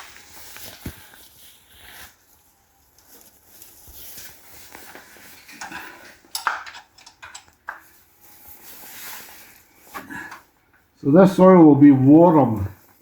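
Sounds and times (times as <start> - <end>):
rustling: 0.0 - 6.2, 7.6 - 11.0
metallic clinks and knocks: 5.6 - 7.9.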